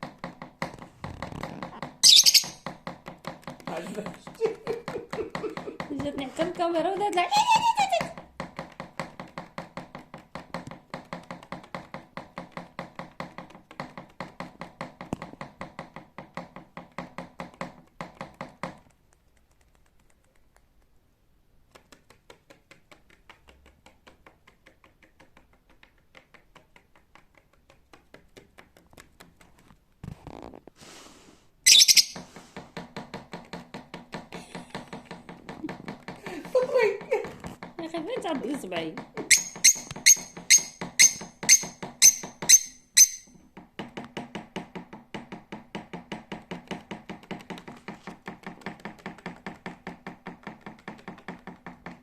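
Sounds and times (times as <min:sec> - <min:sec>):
bird beak pecking: 0:00.0 - 0:06.0, 0:17.4 - 0:21.0, 0:21.6 - 0:29.8, 0:31.7 - 0:36.6, 0:38.4 - 0:43.3, 0:45.1 - 0:52.0
shrill bird call: 0:02.0 - 0:02.6, 0:31.7 - 0:32.2, 0:39.3 - 0:43.3.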